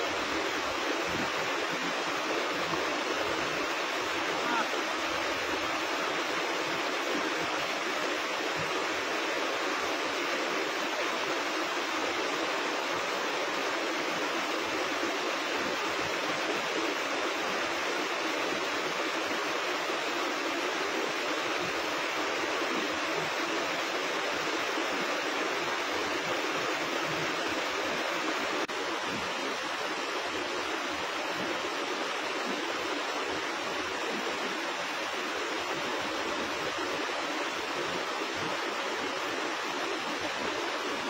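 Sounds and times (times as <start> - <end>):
river water rushing: 0.0 - 41.0.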